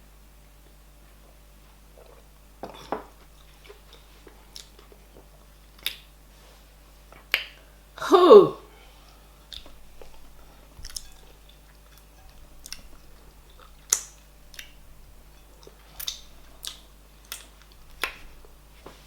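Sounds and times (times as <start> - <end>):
chewing soft food: 0.6 - 6.2, 9.4 - 19.0
wet mouth smacks: 16.0 - 18.2.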